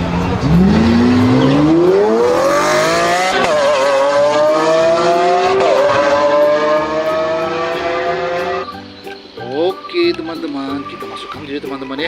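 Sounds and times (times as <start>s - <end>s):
sports car engine revving: 0.0s - 8.7s.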